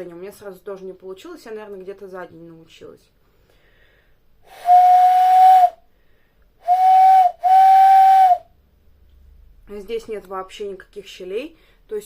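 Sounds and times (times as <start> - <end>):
hand whistle hooting: 4.5 - 5.8, 6.6 - 8.5.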